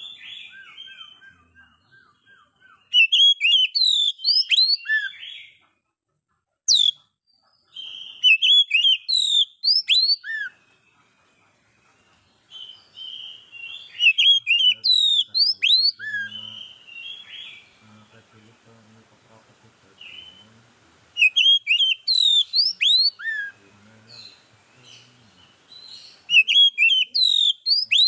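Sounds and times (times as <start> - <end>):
bird singing rapid whistles: 0.0 - 5.5, 6.7 - 7.0, 7.8 - 10.6, 12.5 - 18.2, 21.2 - 23.6, 24.2 - 28.0.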